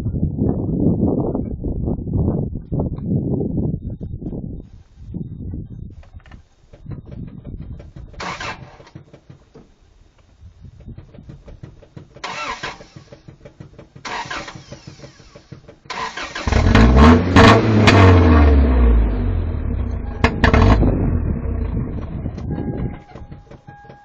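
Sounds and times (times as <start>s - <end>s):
engine cranking on starter: 8.2s - 9.2s, 12.1s - 22.6s
engine revving: 15.9s - 22.5s.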